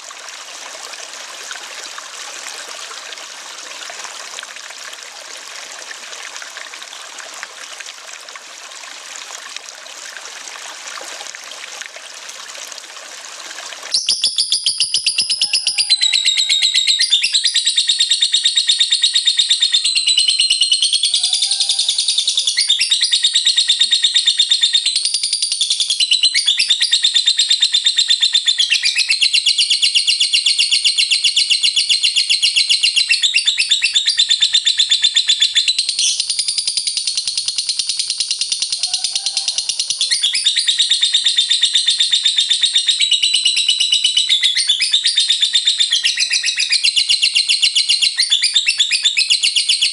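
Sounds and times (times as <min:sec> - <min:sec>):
running water: 0:00.0 - 0:16.8
bird high-pitched chattering trill: 0:14.0 - 0:49.9.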